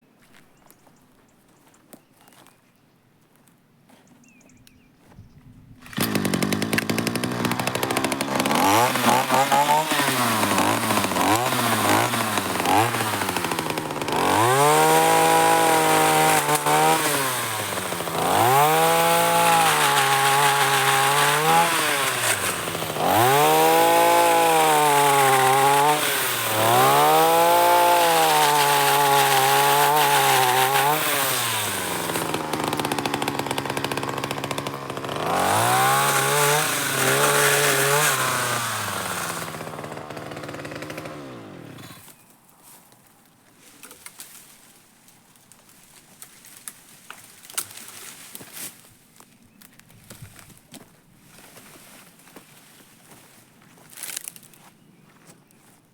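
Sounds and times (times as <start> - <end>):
pole chainsaw revving: 5.8 - 42.2.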